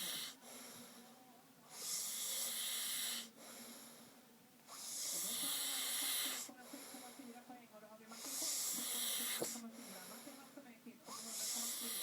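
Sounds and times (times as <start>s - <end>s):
man snoring: 0.0s - 0.4s, 1.8s - 3.3s, 4.7s - 6.5s
quiet breathing: 0.0s - 12.0s.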